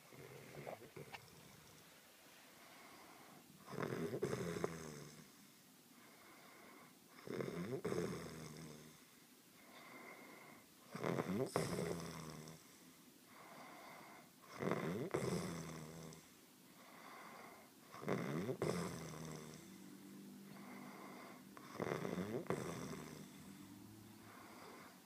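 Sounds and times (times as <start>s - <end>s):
soft steady snoring: 0.0s - 25.0s
loud snores: 3.6s - 5.3s, 6.4s - 9.0s, 10.9s - 12.7s, 14.5s - 16.3s, 17.1s - 19.9s, 20.5s - 25.0s.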